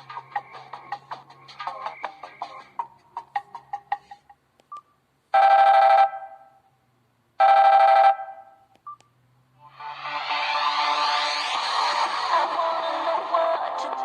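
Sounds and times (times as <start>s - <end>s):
buzzy trilled phone rings: 7.4s - 8.6s
electronic ringtone: 7.4s - 8.6s.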